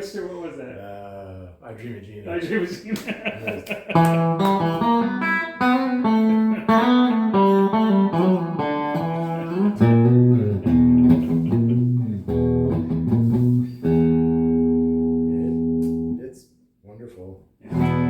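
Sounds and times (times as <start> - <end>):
electric guitar melody: 3.9 - 16.2, 17.7 - 18.0.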